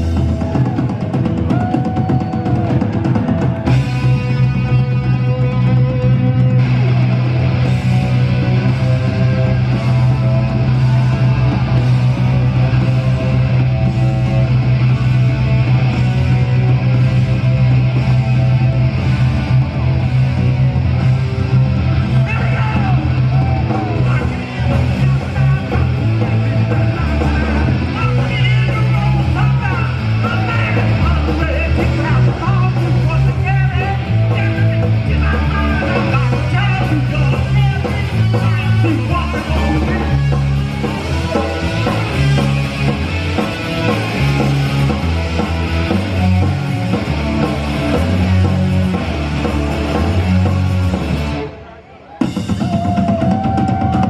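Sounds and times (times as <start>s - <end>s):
shouted vocals: 0.0s - 4.0s, 22.0s - 42.9s, 51.8s - 54.0s
bass guitar: 0.0s - 54.0s
drums: 0.0s - 54.0s
electric guitars: 0.0s - 54.0s.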